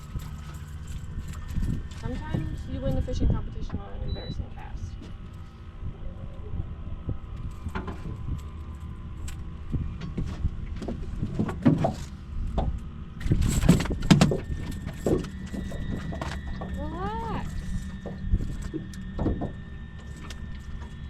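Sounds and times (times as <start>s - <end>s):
wind rumbling on microphone: 0.0s - 21.0s.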